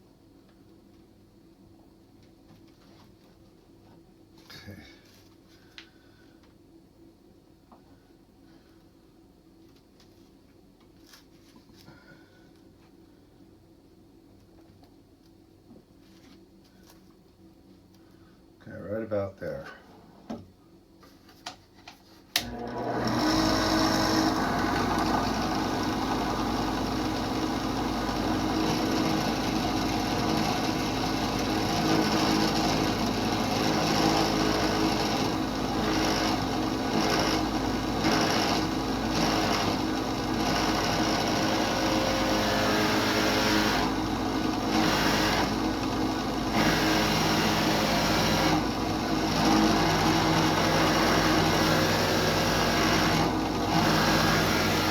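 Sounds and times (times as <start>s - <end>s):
electric drill drilling wood: 22.4s - 54.9s.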